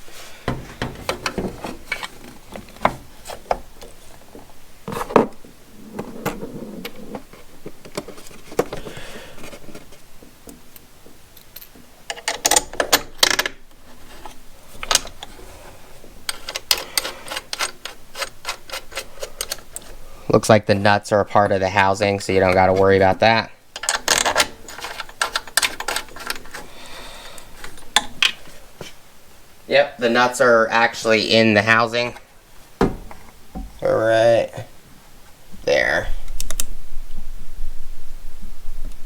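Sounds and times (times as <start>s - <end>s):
plastic parts and bolts clicking: 0.4s - 5.4s, 6.3s - 15.5s, 16.2s - 20.0s, 23.8s - 26.7s, 27.4s - 28.6s.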